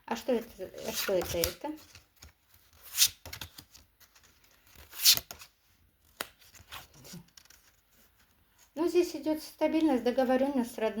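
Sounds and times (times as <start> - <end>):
cards rustling: 0.7 - 8.4.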